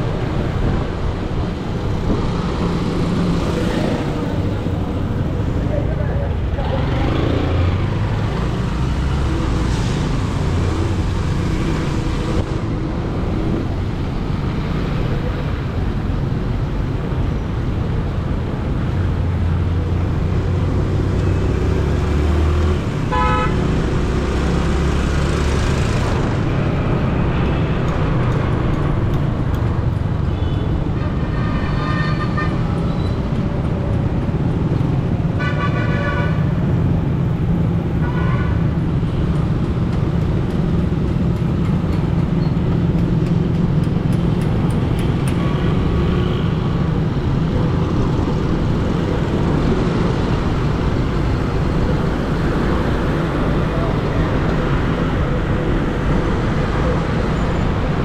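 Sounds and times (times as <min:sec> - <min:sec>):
traffic engines rumbling: 0:00.0 - 0:58.0
car horns honking: 0:23.0 - 0:23.7.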